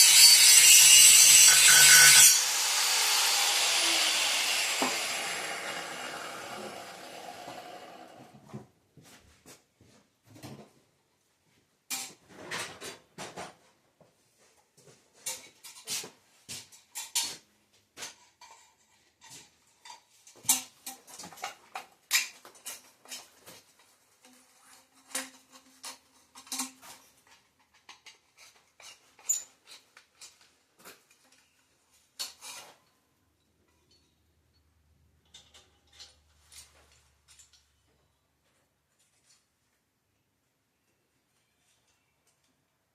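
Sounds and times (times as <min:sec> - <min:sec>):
metal tools clinking and clanking: 0:25.0 - 0:31.6, 0:33.6 - 0:37.8.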